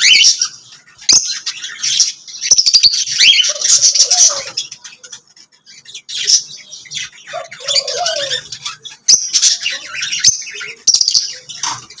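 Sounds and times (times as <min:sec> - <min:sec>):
lovebirds chirping: 0:00.0 - 0:12.0
bird call rising and falling: 0:07.3 - 0:08.6.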